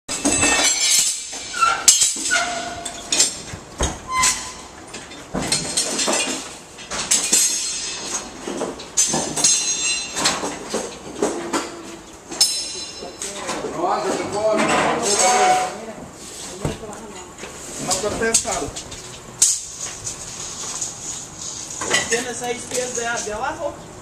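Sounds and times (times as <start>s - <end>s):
metal clanks and bangs: 0.1s - 15.8s.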